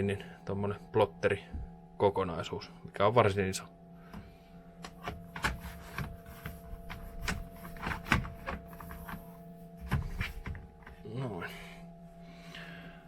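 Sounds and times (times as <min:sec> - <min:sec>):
faint electrical hum: 0:00.0 - 0:13.0
clicks of things being handled: 0:04.1 - 0:11.0.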